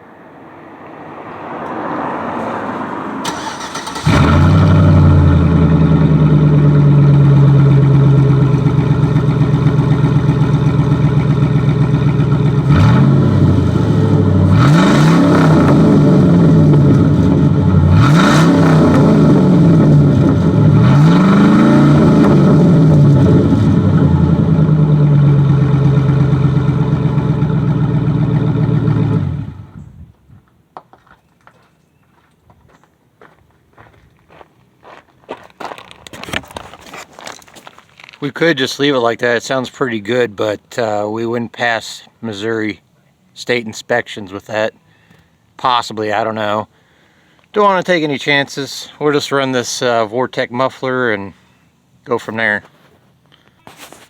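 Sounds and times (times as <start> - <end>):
loud truck engine idling and revving: 2.4 - 29.9.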